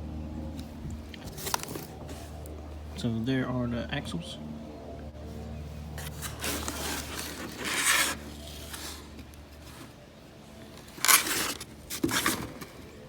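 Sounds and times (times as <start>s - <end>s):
rubbing and scraping of packaging: 1.2s - 2.4s, 6.0s - 13.0s.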